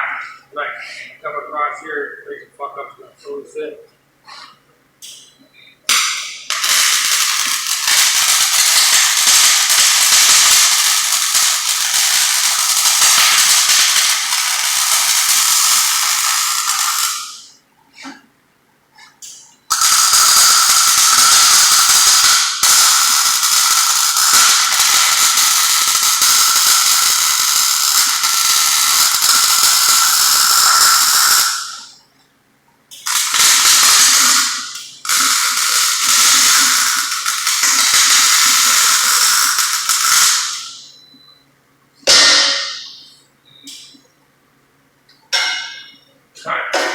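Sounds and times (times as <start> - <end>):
arc welding crackling and sizzling: 5.9 - 17.6, 19.2 - 32.0, 32.9 - 41.0.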